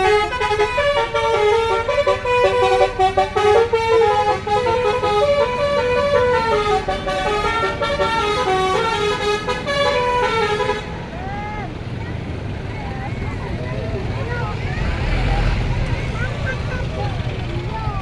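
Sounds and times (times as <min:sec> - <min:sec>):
bus horn playing melody: 0:00.0 - 0:11.2
low engine rumble: 0:00.0 - 0:18.0.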